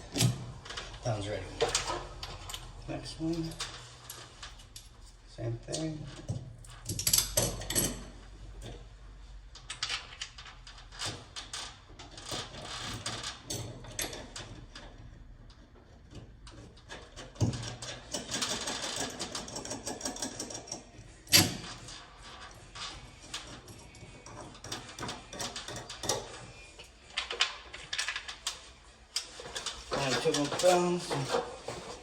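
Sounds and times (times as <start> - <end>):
metal hardware clicking and clinking: 6.7 - 8.2.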